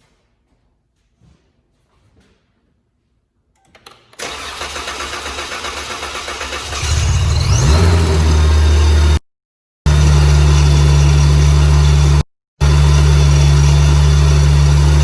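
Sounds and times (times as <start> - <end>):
starter cranking: 3.9 - 8.0
rising supercharger whine: 6.8 - 9.2, 9.9 - 15.0.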